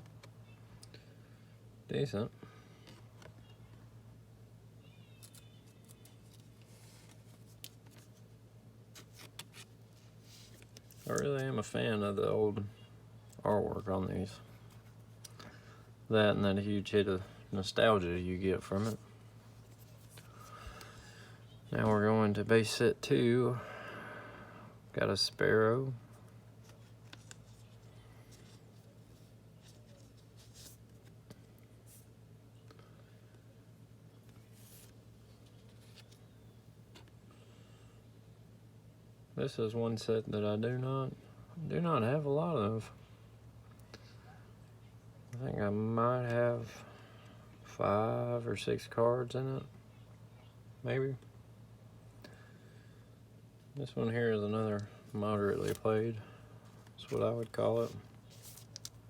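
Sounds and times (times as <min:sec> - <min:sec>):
steady low hum: 0:00.0 - 0:59.0
trading cards sliding and clicking: 0:54.8 - 0:55.9
soft rustles: 0:56.6 - 0:59.0.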